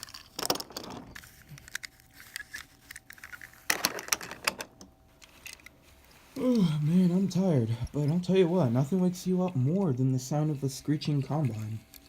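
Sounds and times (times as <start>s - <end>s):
toy cars clicking and clattering: 0.0s - 4.7s.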